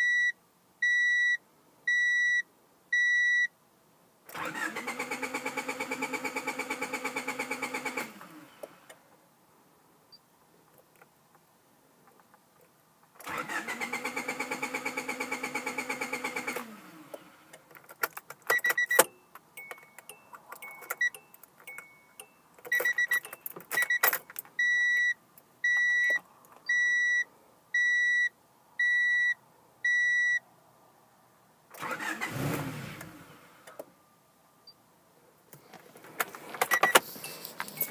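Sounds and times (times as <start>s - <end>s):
starter motor cranking engine: 4.3s - 8.3s, 13.2s - 16.9s, 31.8s - 33.2s.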